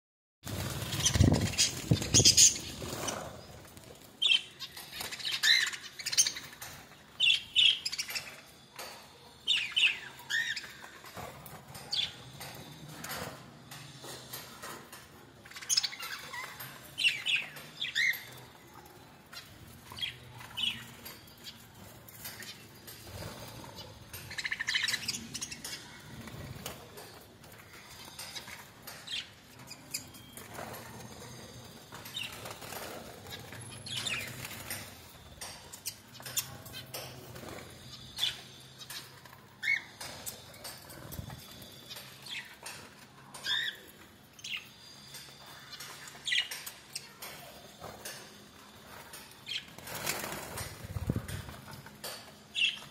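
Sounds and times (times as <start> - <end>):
wings flapping: 0.4 - 3.8
small birds chirping: 0.6 - 13.0, 15.3 - 52.9.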